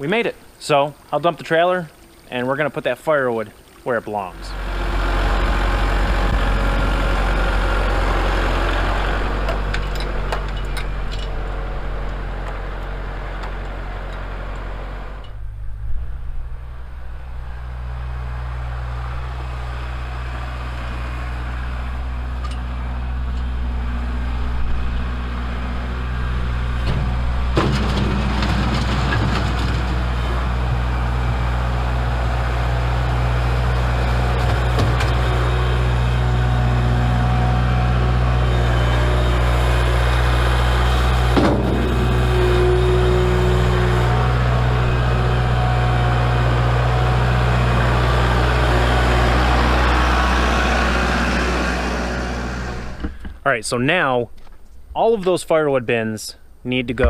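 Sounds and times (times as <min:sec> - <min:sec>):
tractor diesel engine running: 0:04.3 - 0:53.4
clattering: 0:26.8 - 0:30.8, 0:41.4 - 0:43.8
sharp knocks: 0:41.3 - 0:43.2.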